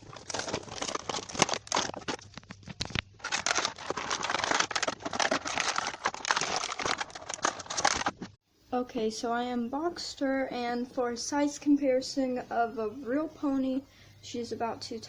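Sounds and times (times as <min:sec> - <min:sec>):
plastic and cardboard crinkling: 0:00.0 - 0:08.4.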